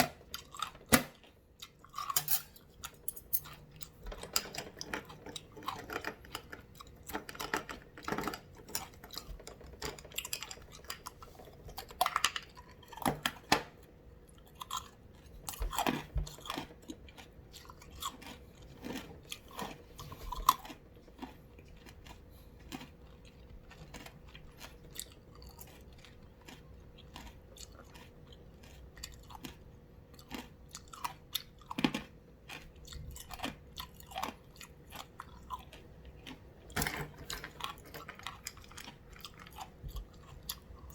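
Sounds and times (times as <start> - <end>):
ice being crunched and chewed: 14.3 - 36.5, 37.6 - 40.9.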